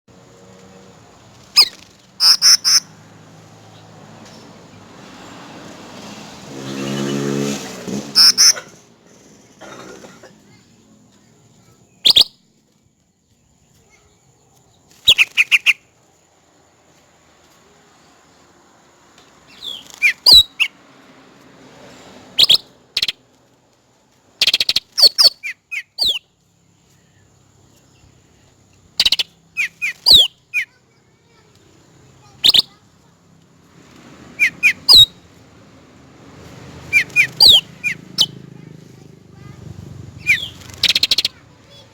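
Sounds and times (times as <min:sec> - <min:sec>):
bird whistling calls: 0:01.6 - 0:02.9, 0:08.2 - 0:08.6, 0:12.0 - 0:12.4, 0:15.0 - 0:15.8, 0:19.5 - 0:20.7, 0:22.4 - 0:23.2, 0:24.4 - 0:26.3, 0:29.0 - 0:30.8, 0:32.3 - 0:32.8, 0:34.4 - 0:35.2, 0:36.9 - 0:38.4, 0:40.2 - 0:41.8.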